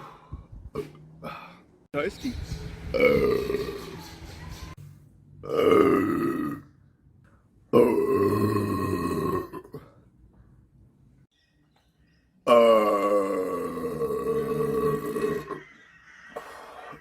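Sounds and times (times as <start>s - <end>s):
person belching loudly: 3.0s - 3.8s, 5.4s - 6.7s, 7.8s - 9.9s, 12.5s - 15.6s.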